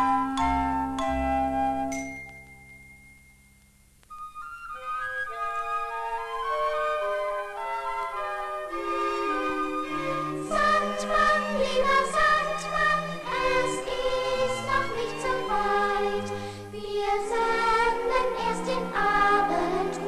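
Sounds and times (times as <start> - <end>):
instrumental backing: 0.0 - 20.0
choir singing: 8.6 - 20.0.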